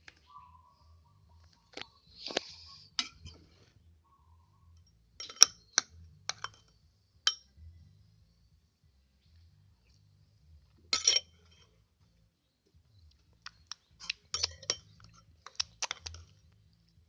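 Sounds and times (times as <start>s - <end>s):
spoon clinking against glass: 3.0s - 3.4s, 5.2s - 5.6s, 11.0s - 11.3s, 14.0s - 15.0s.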